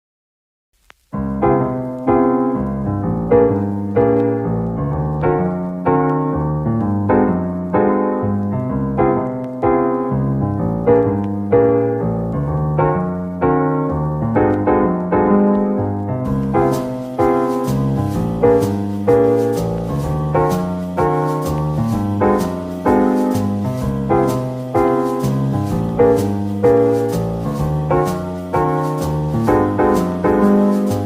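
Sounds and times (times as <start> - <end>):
soft piano music: 1.1 - 31.0.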